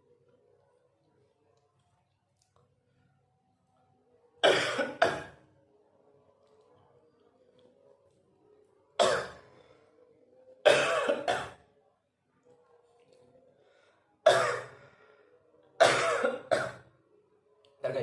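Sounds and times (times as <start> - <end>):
person coughing hard: 4.4 - 5.3, 10.7 - 11.5, 14.3 - 14.7, 15.8 - 16.8.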